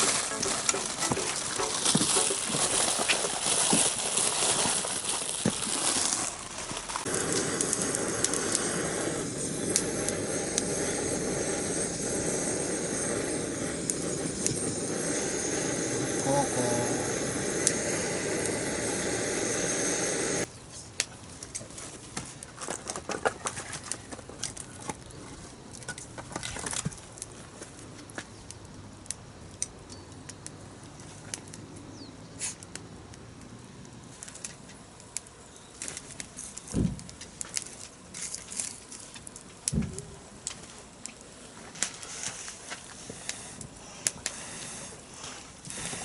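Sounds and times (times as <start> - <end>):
loud steady rush: 0.0 - 3.4, 7.1 - 20.5
burning wood crackling: 0.0 - 46.0.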